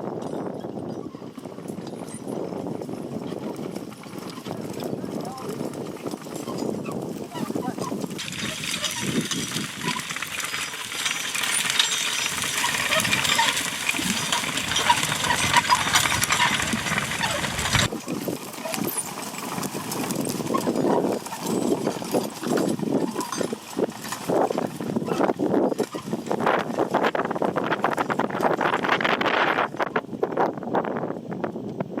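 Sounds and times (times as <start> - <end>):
hooves clopping: 1.3 - 26.8
machine clattering: 8.2 - 17.9.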